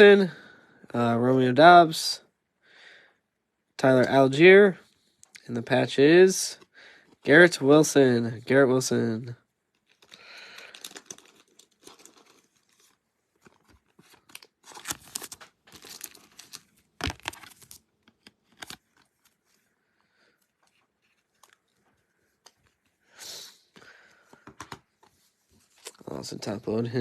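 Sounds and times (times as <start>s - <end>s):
cards sliding into plastic sleeves: 9.8s - 19.7s.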